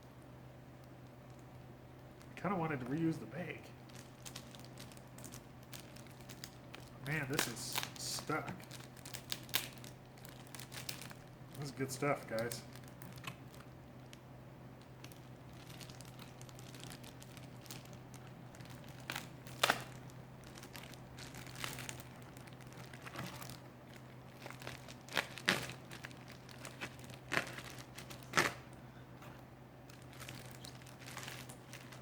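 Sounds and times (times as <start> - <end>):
steady low hum: 0.0 - 32.0
mailer bag crinkling and rustling: 2.6 - 13.7, 15.0 - 28.7, 29.9 - 32.0.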